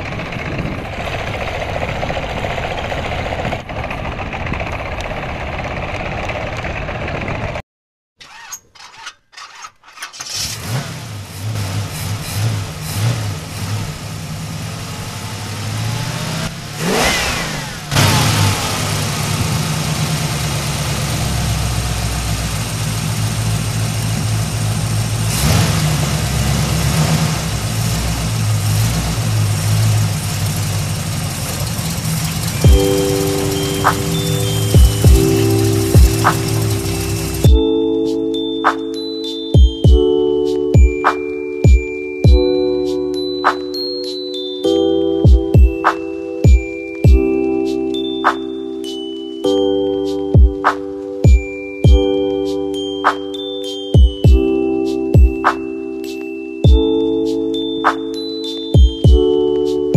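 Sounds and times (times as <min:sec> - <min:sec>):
engine running: 0:00.0 - 0:07.6, 0:10.1 - 0:37.8
engine starting: 0:08.2 - 0:13.3, 0:16.8 - 0:20.3.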